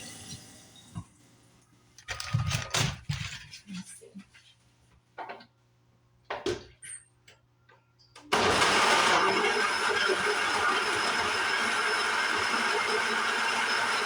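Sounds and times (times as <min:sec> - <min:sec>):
electric blender running: 0:08.3 - 0:14.0.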